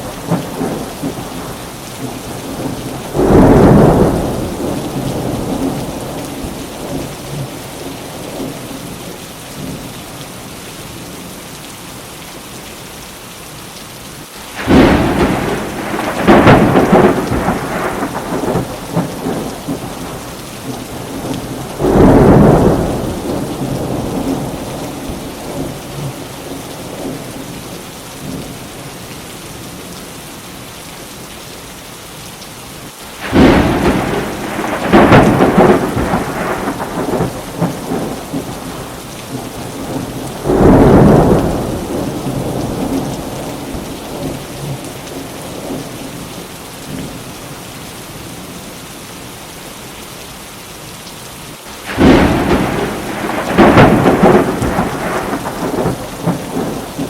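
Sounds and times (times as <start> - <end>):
rolling thunder: 0.0 - 7.6, 14.6 - 27.3, 33.2 - 46.2, 51.8 - 57.0
steady rain: 0.0 - 57.0
thunder clap: 2.0 - 6.1, 14.6 - 26.2, 33.2 - 44.8, 51.8 - 57.0.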